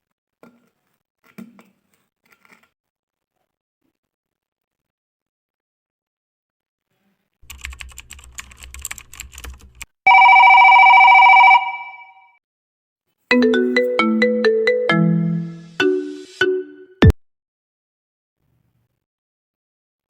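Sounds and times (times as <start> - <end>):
electronic phone ring tone: 10.1 - 12.3
plucked note melody: 13.3 - 16.9.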